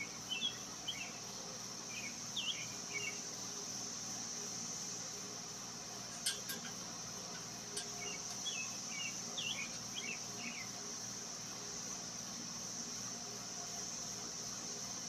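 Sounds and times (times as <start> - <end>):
high-pitched insect drone: 0.0 - 15.0
bird chirping: 1.9 - 3.2, 7.8 - 10.7.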